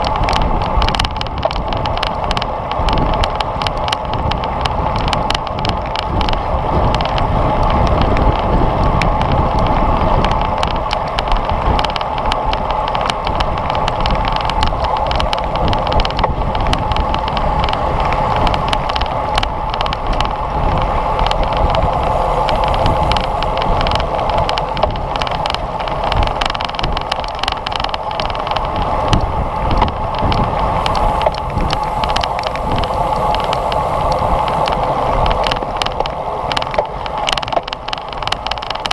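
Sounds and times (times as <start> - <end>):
wind and road noise rushing: 0.0 - 38.9.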